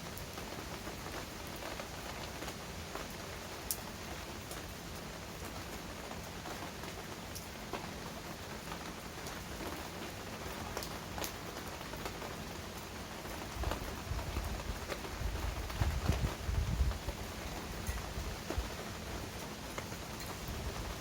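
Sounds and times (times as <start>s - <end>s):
heavy rain hissing: 9.9s - 21.0s.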